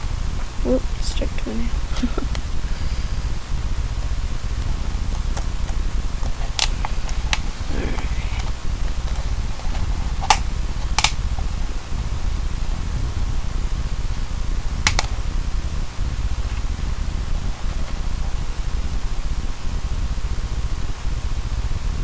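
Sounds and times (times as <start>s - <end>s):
steady low hum: 0.0s - 22.0s
tape and cardboard rustling: 4.6s - 11.8s
sharp clicks: 5.1s - 11.6s, 14.8s - 15.2s.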